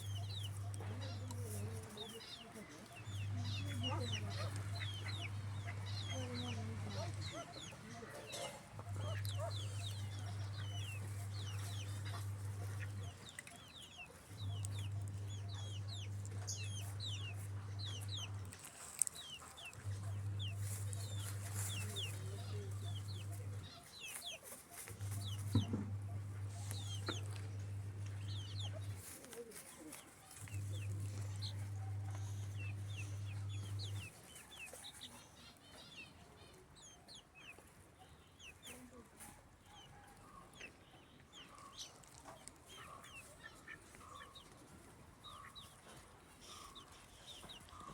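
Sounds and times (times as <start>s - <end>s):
chickens peeping: 0.0s - 47.9s
low steady hum: 2.8s - 18.8s, 19.7s - 23.8s, 24.9s - 29.5s, 30.4s - 34.2s.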